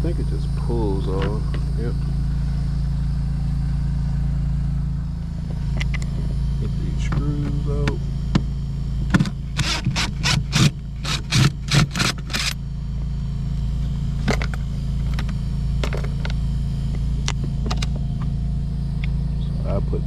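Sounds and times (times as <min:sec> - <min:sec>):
steady low hum: 0:00.0 - 0:20.0
screwdriver scraping screws: 0:09.5 - 0:12.6.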